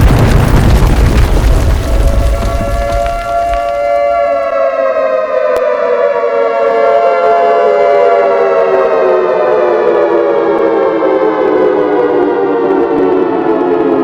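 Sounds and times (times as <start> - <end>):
two-tone siren wail gliding down: 3.5 - 14.0.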